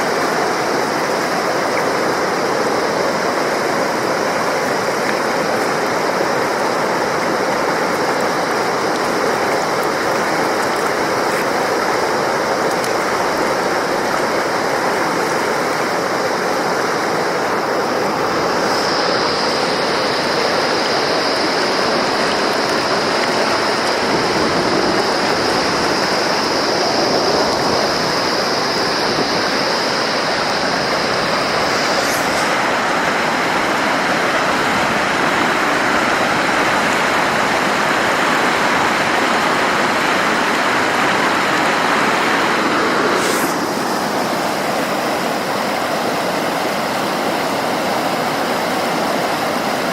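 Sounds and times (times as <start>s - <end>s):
river rushing: 0.0s - 49.9s
thin high whistle: 29.7s - 33.4s.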